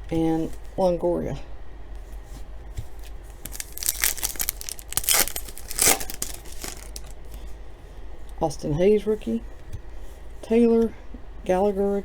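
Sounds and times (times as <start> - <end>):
wrapper tearing and crinkling: 3.4 - 7.2.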